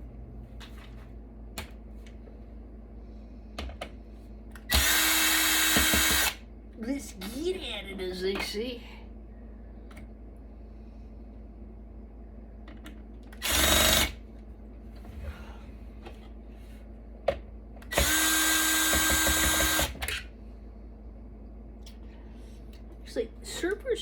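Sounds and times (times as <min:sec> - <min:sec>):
power drill running: 0:04.6 - 0:06.4, 0:13.4 - 0:14.2, 0:17.9 - 0:20.2.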